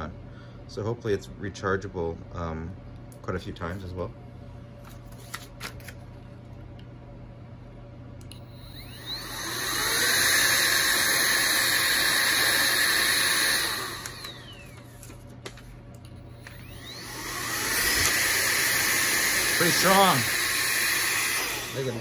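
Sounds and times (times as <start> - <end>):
air duster blower motor whining: 8.3 - 22.0.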